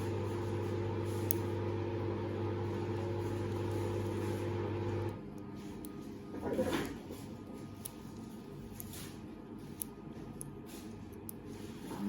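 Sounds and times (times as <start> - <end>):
washing machine motor humming: 0.0 - 7.8.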